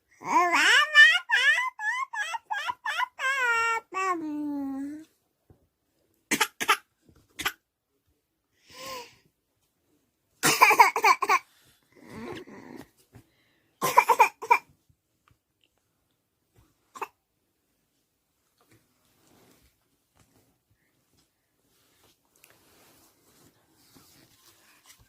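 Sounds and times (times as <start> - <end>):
soft voice sounds: 3.6 - 5.2
baby coughing: 6.3 - 7.6, 10.4 - 11.5, 13.8 - 14.7, 16.9 - 17.2
woman coughing: 10.4 - 11.3, 13.8 - 14.6.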